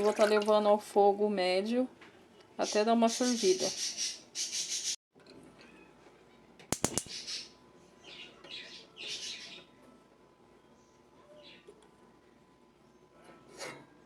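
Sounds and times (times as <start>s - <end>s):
gas stove igniter clicking: 6.8s - 7.2s.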